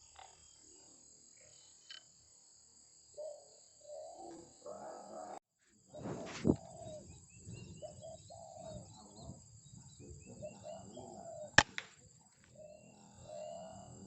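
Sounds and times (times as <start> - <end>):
high insect drone: 0.0 - 14.0
birds calling and chirping: 3.2 - 14.0
air rifle shot: 11.6 - 12.0.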